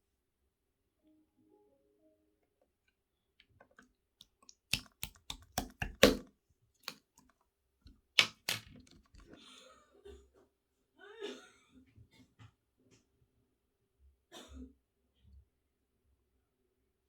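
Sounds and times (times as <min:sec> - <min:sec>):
slime clicking pops: 0:04.6 - 0:06.2, 0:08.2 - 0:08.6.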